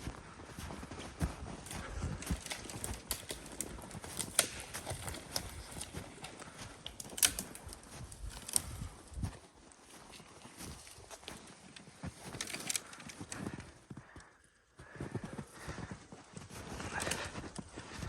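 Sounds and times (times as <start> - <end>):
footsteps crunching through snow: 0.0 - 14.0, 14.8 - 18.0
sharp snow cracks: 1.7 - 9.0.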